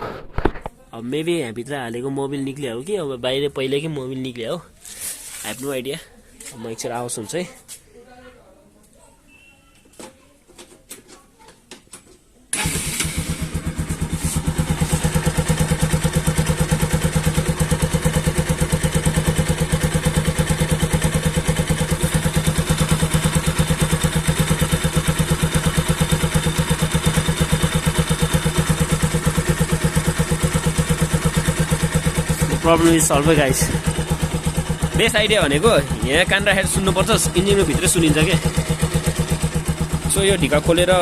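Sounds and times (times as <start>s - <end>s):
motorcycle engine starting and idling: 12.5s - 41.0s.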